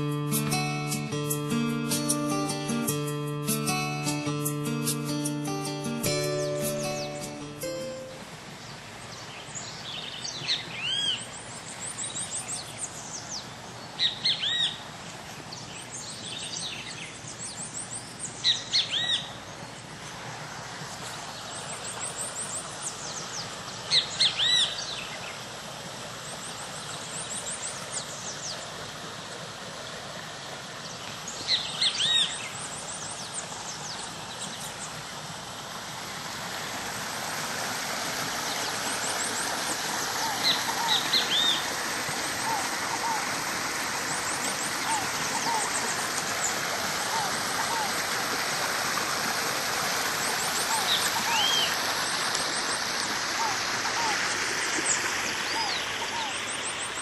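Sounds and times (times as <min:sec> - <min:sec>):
bird whistled call: 0:50.7 - 0:51.7.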